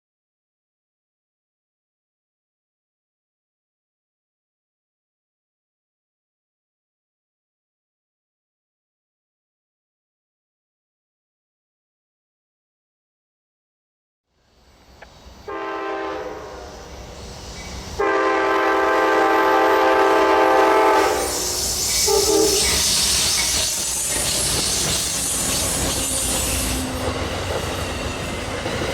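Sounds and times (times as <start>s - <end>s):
train wheels rushing on rails: 14.4s - 28.9s
train horn blasts: 15.5s - 17.0s, 18.0s - 22.8s.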